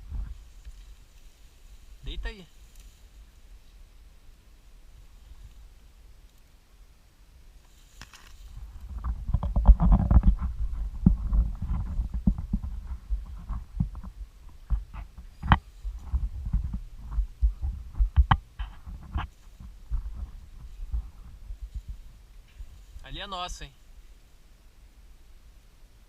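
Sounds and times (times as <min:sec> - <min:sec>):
microphone handling rumble: 0:00.0 - 0:01.0, 0:08.2 - 0:23.4
sharp clicks and knocks: 0:09.0 - 0:20.0.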